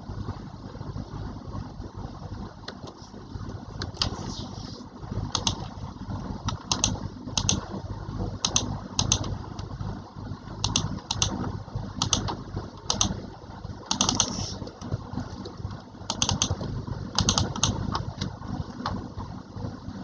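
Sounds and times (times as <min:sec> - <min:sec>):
steady low rumble: 0:00.0 - 0:20.0
sharp clicks: 0:05.3 - 0:05.6, 0:06.4 - 0:07.6, 0:08.4 - 0:09.7, 0:10.6 - 0:11.4, 0:12.0 - 0:13.2, 0:13.9 - 0:14.9, 0:16.1 - 0:18.9.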